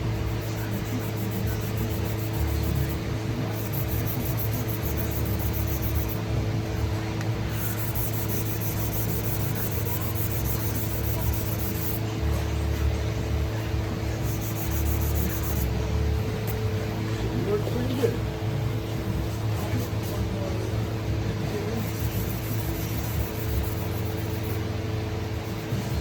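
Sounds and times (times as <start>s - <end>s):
music with fast beat: 0.0s - 6.3s, 7.5s - 12.1s, 14.2s - 15.8s, 21.8s - 26.0s
electrical hum: 0.0s - 26.0s.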